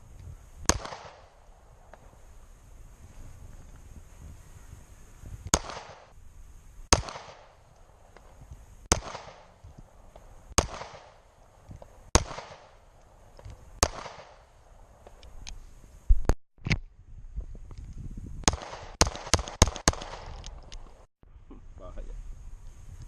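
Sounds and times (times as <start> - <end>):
pistol shots with echo: 0.7 - 2.0, 5.5 - 6.1, 6.9 - 8.3, 8.9 - 9.6, 10.6 - 12.9, 13.8 - 14.8, 18.5 - 20.4.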